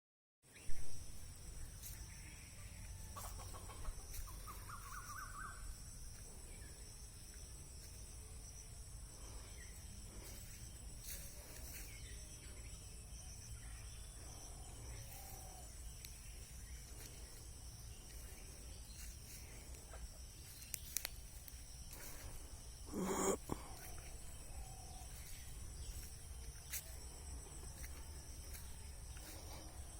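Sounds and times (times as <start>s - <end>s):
faint chicken clucking: 1.8s - 6.8s, 13.5s - 29.8s.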